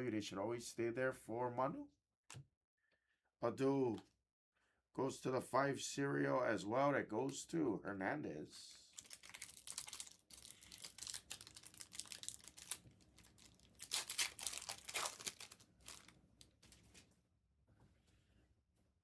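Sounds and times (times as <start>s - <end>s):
wrapper crinkling and tearing: 8.9s - 17.0s.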